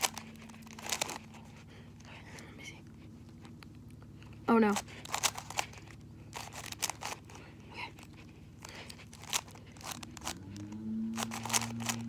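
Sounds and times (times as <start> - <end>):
plastic puzzle cube clicking: 0.0 - 1.2, 5.1 - 5.8, 6.4 - 7.2, 9.1 - 12.0
low steady hum: 0.0 - 12.0.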